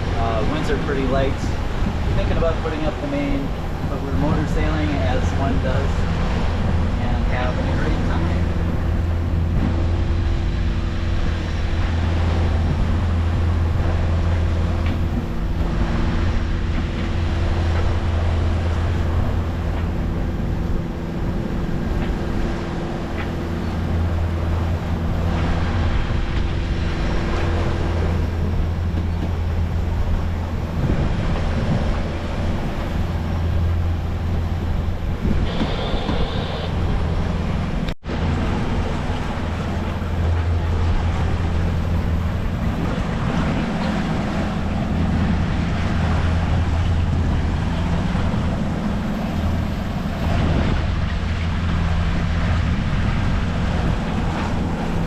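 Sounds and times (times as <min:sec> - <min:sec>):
boat engine humming: 0:00.0 - 0:55.0
water rushing along hull: 0:00.0 - 0:55.0
wind buffeting microphone: 0:00.0 - 0:55.0.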